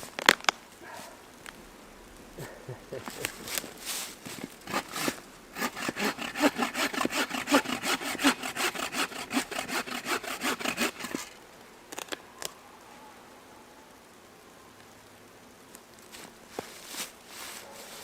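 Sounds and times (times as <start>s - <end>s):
hand saw cutting wood: 3.1s - 11.4s.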